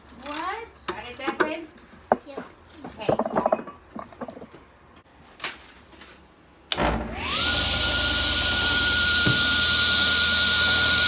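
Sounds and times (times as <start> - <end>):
table saw motor whine: 6.7 - 11.0.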